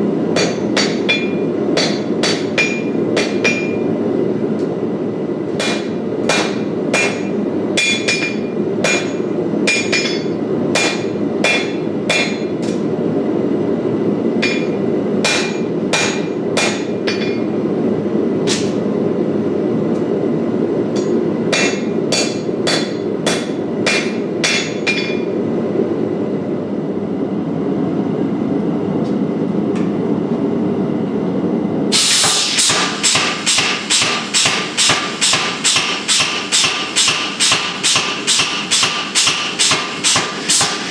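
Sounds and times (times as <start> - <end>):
hammer ringing on anvil: 0.4 - 3.9, 5.6 - 12.6, 14.4 - 17.5, 21.0 - 25.3, 32.6 - 40.9.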